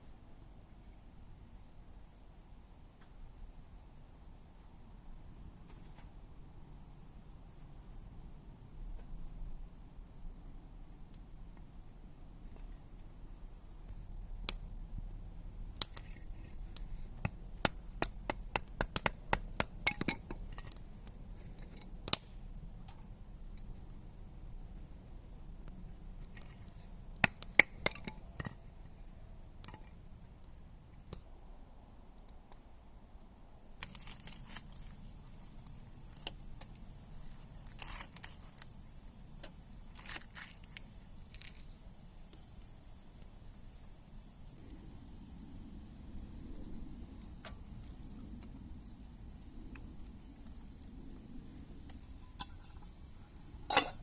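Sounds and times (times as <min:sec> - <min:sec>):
low steady rumble: 0:00.0 - 0:33.8
sharp clicks and cracks: 0:15.7 - 0:24.0, 0:25.6 - 0:28.6
crinkling and rustling: 0:33.8 - 0:38.8, 0:39.9 - 0:41.8.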